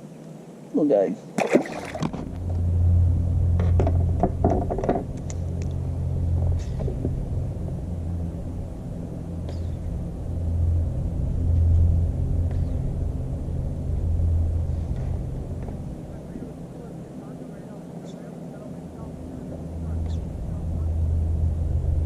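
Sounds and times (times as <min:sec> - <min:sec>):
low engine drone: 0:00.0 - 0:22.0
light clicks and knocks: 0:03.6 - 0:05.8.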